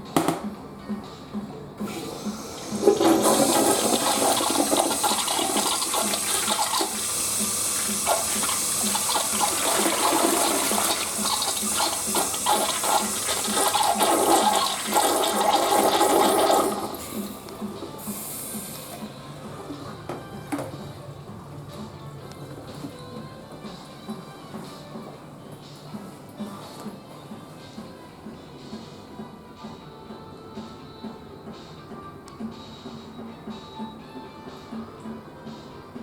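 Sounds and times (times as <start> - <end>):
toilet flushing: 1.8 - 20.0.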